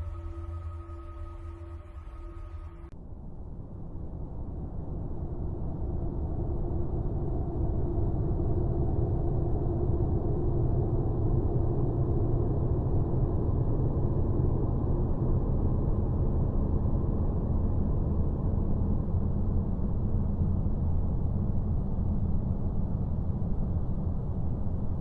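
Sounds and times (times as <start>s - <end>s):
faint held tones: 0.0s - 2.9s
low rumbling drone: 0.0s - 25.0s.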